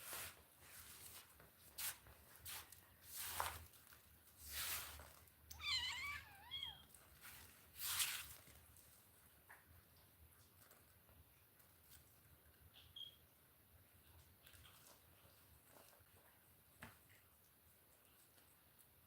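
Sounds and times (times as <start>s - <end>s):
soft rustling: 0.0s - 9.2s
cat meowing: 5.5s - 6.9s.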